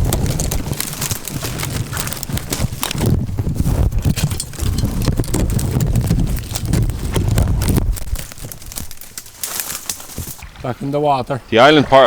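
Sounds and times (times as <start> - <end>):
footsteps through brush: 0.0 - 11.1.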